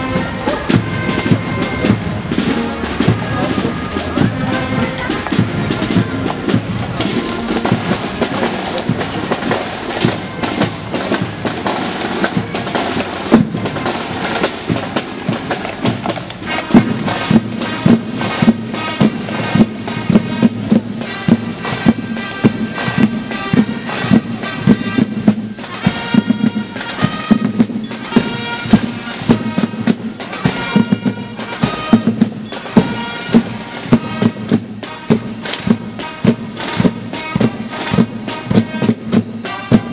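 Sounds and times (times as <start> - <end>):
drums beating: 0.0 - 39.9
melody instruments: 16.7 - 39.9.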